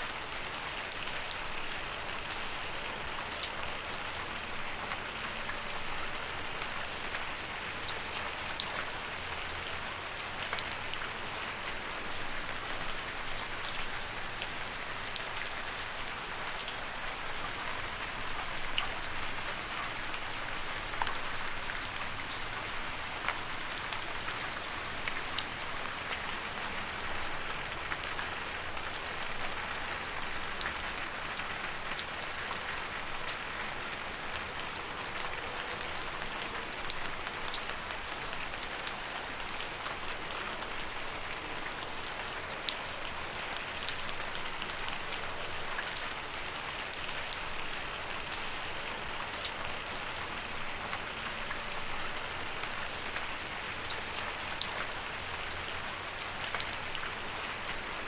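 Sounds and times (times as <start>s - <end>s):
rain falling: 0.0s - 58.0s.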